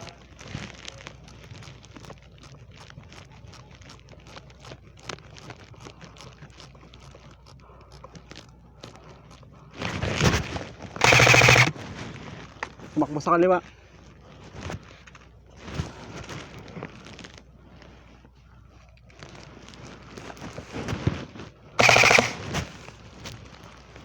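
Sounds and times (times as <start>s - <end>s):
rustling of gear: 0.0s - 13.0s, 14.0s - 24.0s
loud burst of noise with clicks: 11.0s - 11.7s, 21.8s - 22.5s.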